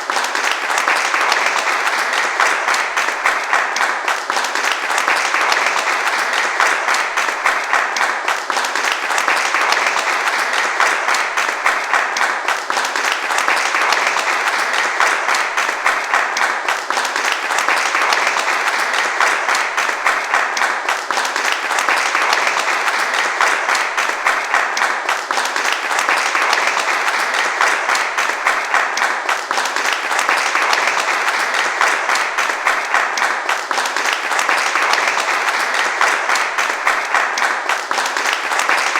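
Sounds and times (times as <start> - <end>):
crowd applauding: 0.0 - 38.9.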